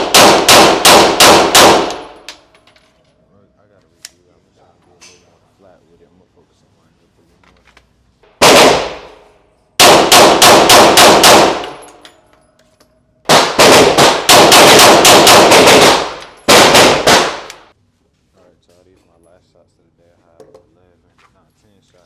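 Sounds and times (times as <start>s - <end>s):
pistol shots echoing: 0.0s - 2.5s, 8.3s - 12.0s, 13.3s - 17.7s.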